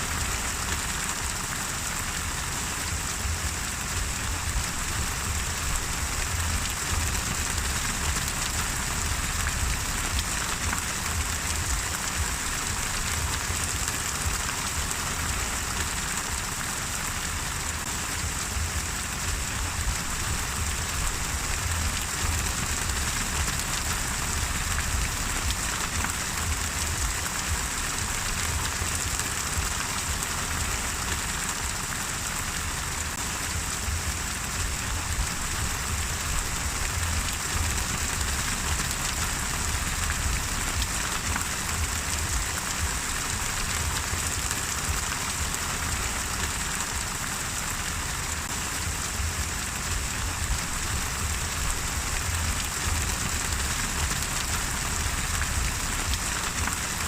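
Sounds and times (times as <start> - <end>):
rain pattering on a surface: 0.0 - 57.0
low rumble: 2.8 - 15.5, 17.7 - 29.8, 33.2 - 45.1.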